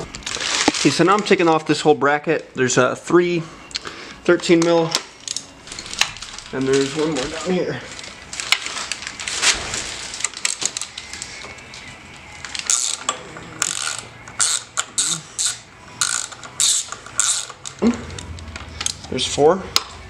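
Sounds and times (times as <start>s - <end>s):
ratchet wrench clicking: 12.6s - 17.8s.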